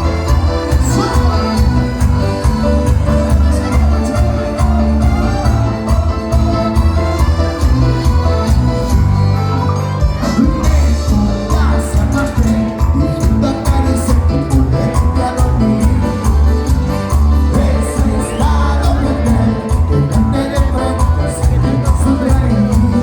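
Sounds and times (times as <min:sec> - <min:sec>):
person singing: 0:00.0 - 0:09.0, 0:10.2 - 0:23.0
steady bass beat: 0:00.0 - 0:09.4
band playing live: 0:00.0 - 0:23.0
keyboards: 0:00.0 - 0:23.0.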